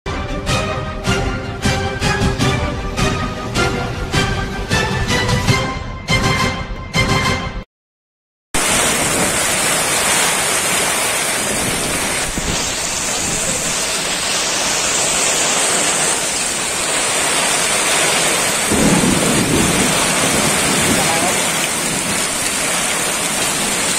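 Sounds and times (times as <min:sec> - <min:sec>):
heavy rain falling: 0:08.6 - 0:23.9
wind: 0:08.6 - 0:23.9.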